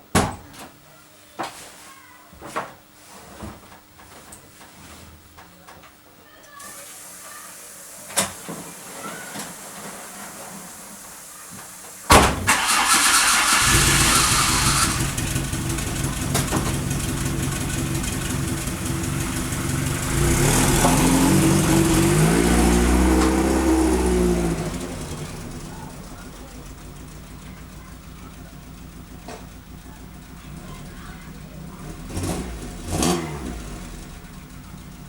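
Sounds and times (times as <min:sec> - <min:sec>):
car engine cranking and starting: 0:12.2 - 0:35.0
car engine idling: 0:12.4 - 0:35.0.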